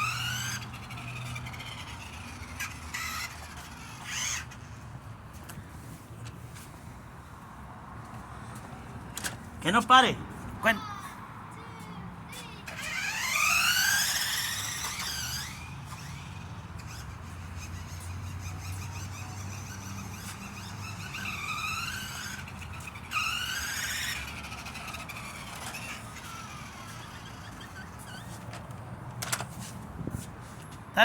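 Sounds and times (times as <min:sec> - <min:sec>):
remote-control car motor whining: 0:00.0 - 0:04.9, 0:12.4 - 0:29.4.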